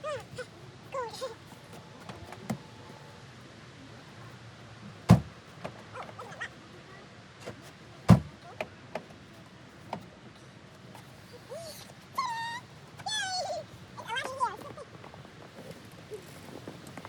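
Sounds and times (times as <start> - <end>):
sharp knocks: 5.1 - 5.4, 8.1 - 8.3
dog whining: 11.3 - 14.8.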